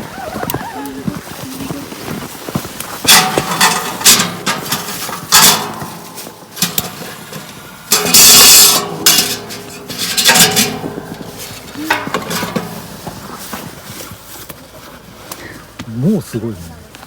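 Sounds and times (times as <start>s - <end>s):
metal cookware clinking: 7.9s - 12.9s.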